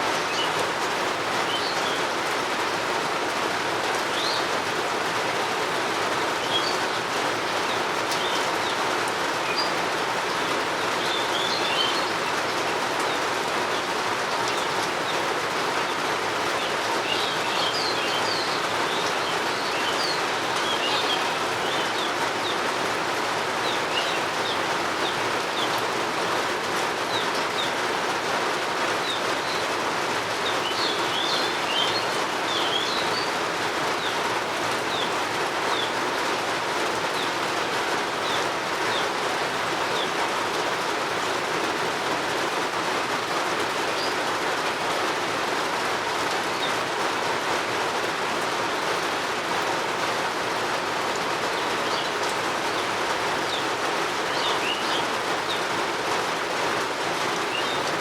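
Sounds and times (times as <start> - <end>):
steady rain falling: 0.0 - 58.0
birds chirping: 1.4 - 2.9, 3.9 - 5.4, 6.1 - 26.3, 28.9 - 36.2, 36.9 - 40.2, 50.2 - 56.5, 57.2 - 58.0.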